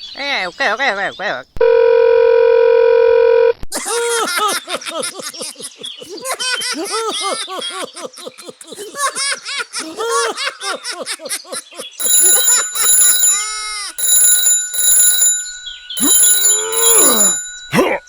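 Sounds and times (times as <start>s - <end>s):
alarm clock bell ringing: 12.0s - 18.0s.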